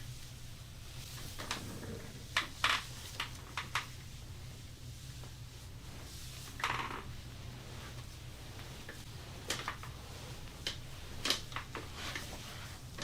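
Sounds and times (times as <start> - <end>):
low room hum: 0.0 - 13.0.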